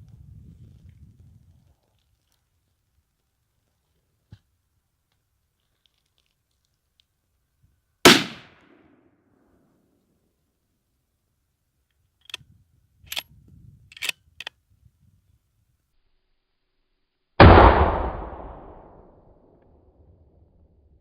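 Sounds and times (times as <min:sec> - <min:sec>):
loud gunshot: 0:08.1 - 0:08.8, 0:17.4 - 0:19.2
rifle bolt clicking: 0:13.9 - 0:14.5.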